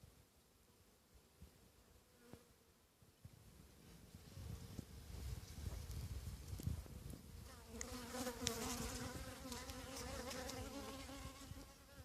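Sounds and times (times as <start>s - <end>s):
bee buzzing: 7.4s - 12.0s.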